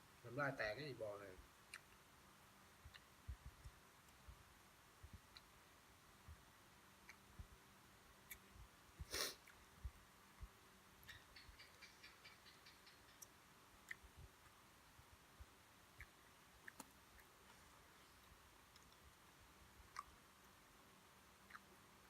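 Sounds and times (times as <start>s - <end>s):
soft ticks: 5.1s - 5.5s.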